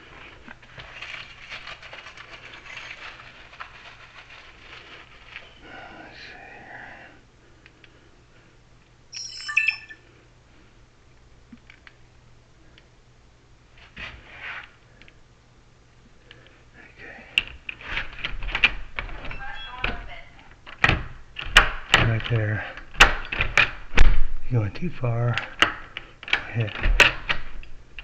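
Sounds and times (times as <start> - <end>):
bright metallic jingle: 9.2 - 10.0.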